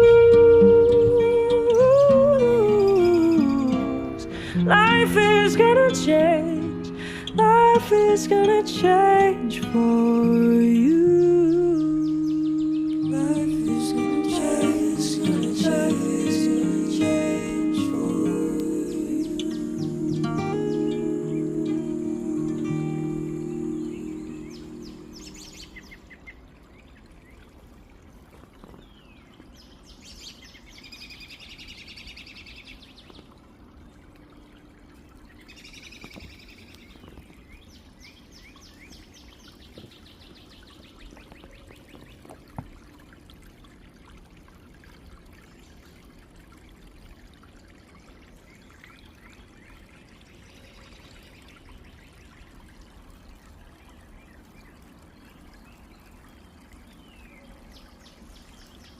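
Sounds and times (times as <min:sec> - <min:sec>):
small stream trickling: 0:00.0 - 0:58.9
birds singing fast trills: 0:23.4 - 0:26.3.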